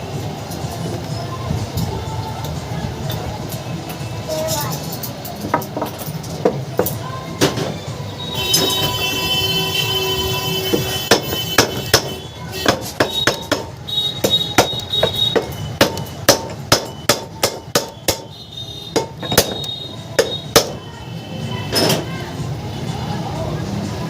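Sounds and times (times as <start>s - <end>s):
hammer tapping on metal: 10.7s - 20.9s.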